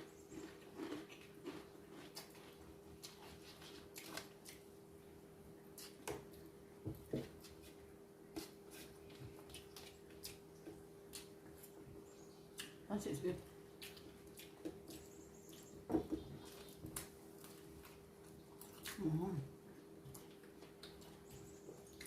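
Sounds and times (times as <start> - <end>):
chewing crunches: 0.0 - 4.7, 8.4 - 11.8, 13.8 - 15.7, 16.4 - 19.1, 20.0 - 22.0.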